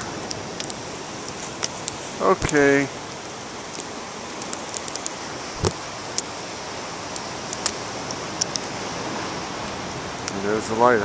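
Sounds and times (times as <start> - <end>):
wind noise: 0.0 - 10.2
ocean surf: 0.0 - 11.0
faint clicks: 0.2 - 2.6, 3.7 - 6.3, 7.2 - 8.7.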